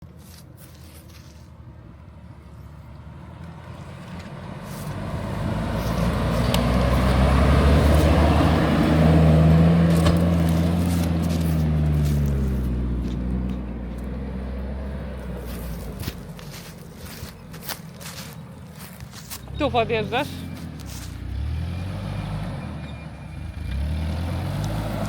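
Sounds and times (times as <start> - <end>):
small car engine under load: 0.6 - 25.0.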